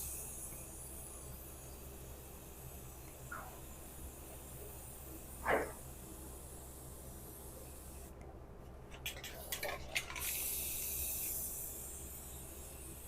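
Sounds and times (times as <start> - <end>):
spray paint hiss: 0.0 - 8.2, 8.8 - 13.0
spray can clicks and rattles: 8.9 - 13.0.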